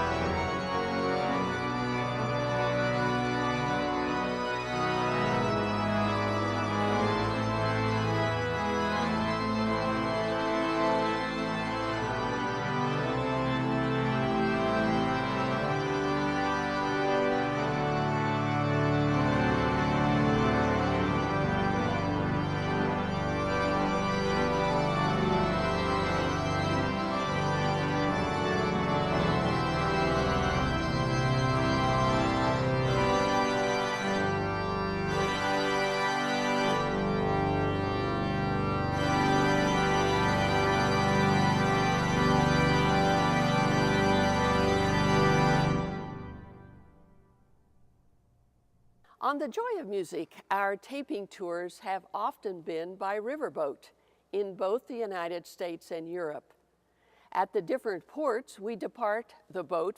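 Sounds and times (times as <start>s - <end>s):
pipe organ playing chords: 0.0s - 47.3s.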